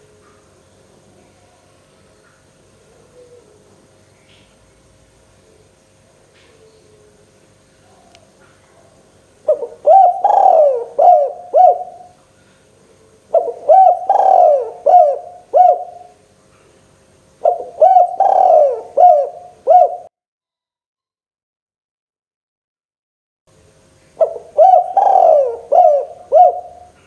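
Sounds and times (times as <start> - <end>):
dove cooing: 2.8 - 3.9, 6.4 - 12.2, 13.0 - 16.2, 17.4 - 20.1, 24.2 - 27.0.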